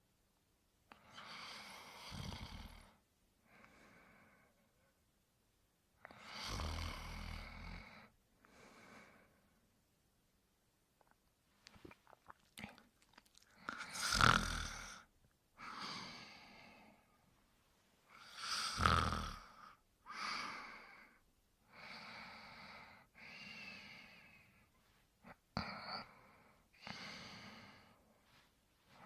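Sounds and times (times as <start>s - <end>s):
cartoon dog snoring: 6.2s - 7.9s, 13.7s - 15.0s, 18.2s - 19.6s.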